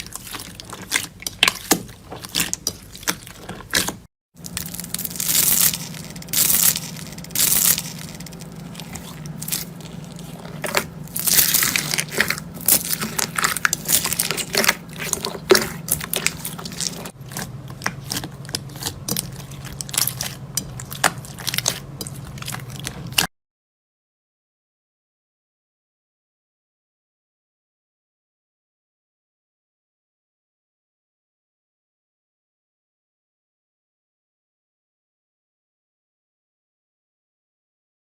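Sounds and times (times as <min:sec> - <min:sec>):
slime crunching and popping: 0:00.0 - 0:23.3
low steady hum: 0:04.4 - 0:23.3.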